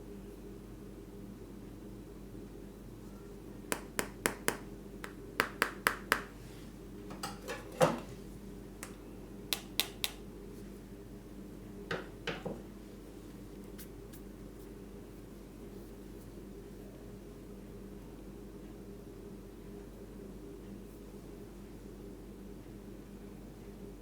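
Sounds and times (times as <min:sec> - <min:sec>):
steady low hum: 0:08.2 - 0:24.0.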